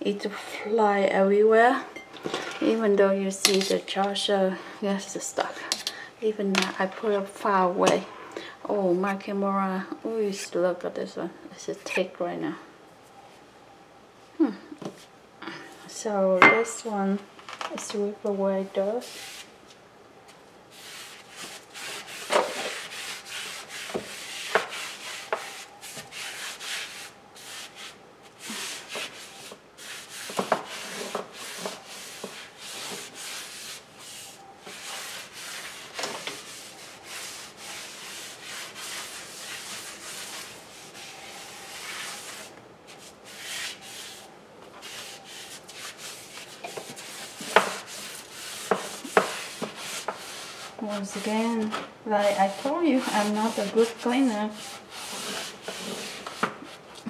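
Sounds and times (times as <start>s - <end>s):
broom sweeping: 18.7s - 57.0s.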